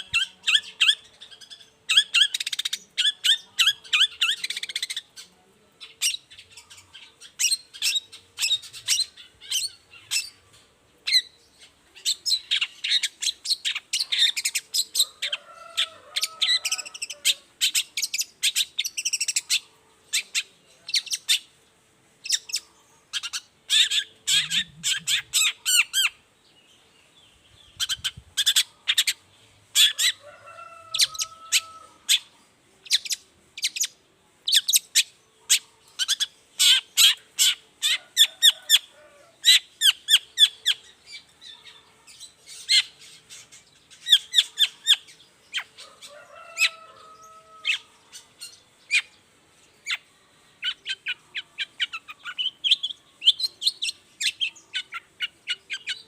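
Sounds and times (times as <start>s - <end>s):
shrike chattering song: 22.2s - 26.2s.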